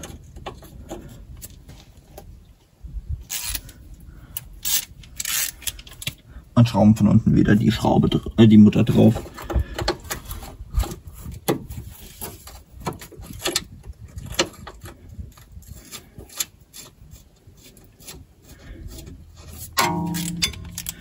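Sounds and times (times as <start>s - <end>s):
hand tools clicking on metal: 19.7s - 21.0s.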